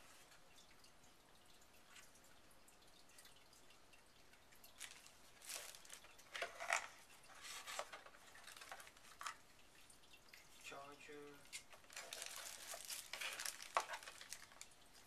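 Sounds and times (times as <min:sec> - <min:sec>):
plastic and cardboard crinkling: 0:04.8 - 0:09.5, 0:11.4 - 0:15.0.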